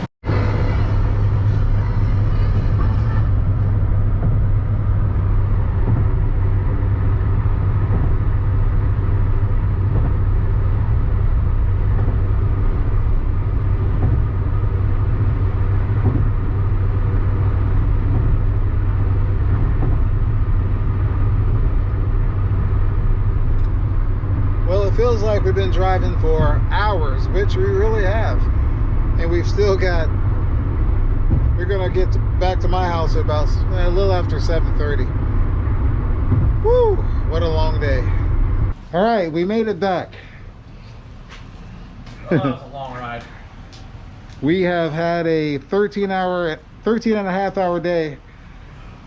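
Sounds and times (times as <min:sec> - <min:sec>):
car cabin road drone: 0:00.0 - 0:49.0.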